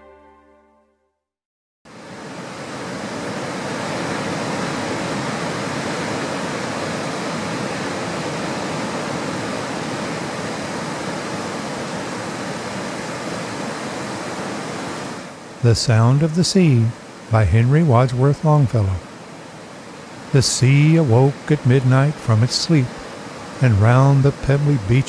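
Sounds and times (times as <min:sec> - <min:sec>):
sea surf rushing: 0:01.9 - 0:25.0
faint steady hum: 0:15.3 - 0:25.0.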